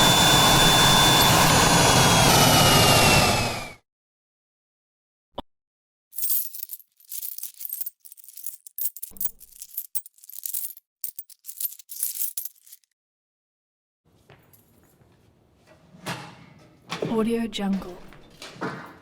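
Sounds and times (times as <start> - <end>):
small metal pieces jingling: 6.2 - 12.9.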